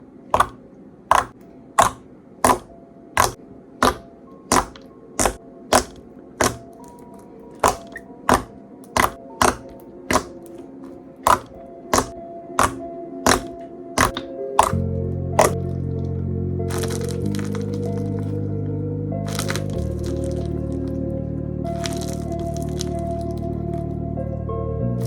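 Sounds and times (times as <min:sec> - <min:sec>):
slime popping clicks: 0:00.4 - 0:06.7, 0:11.3 - 0:14.8
soft background music: 0:00.4 - 0:25.0.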